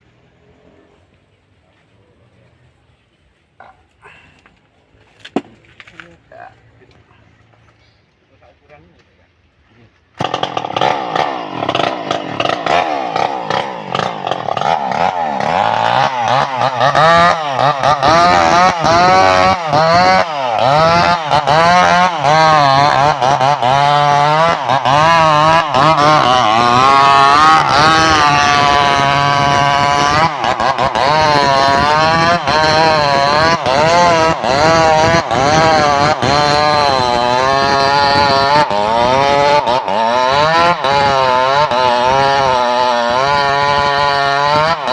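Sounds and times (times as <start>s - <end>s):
chainsaw revving and cutting wood: 10.2s - 44.9s.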